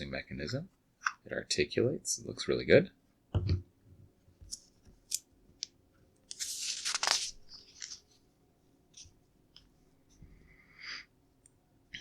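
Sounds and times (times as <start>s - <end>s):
plastic rustling and crunching: 6.3s - 8.1s.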